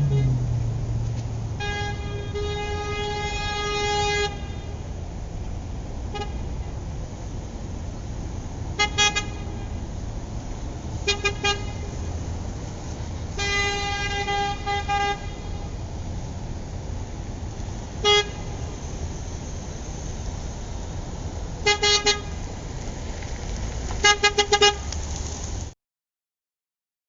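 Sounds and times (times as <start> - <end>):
car horn honking: 0.0 - 0.5, 1.6 - 4.8, 6.1 - 6.7, 8.8 - 9.8, 11.0 - 12.0, 13.3 - 15.7, 18.0 - 18.8, 21.6 - 22.4, 24.0 - 24.9
steady low rumble: 0.0 - 2.9.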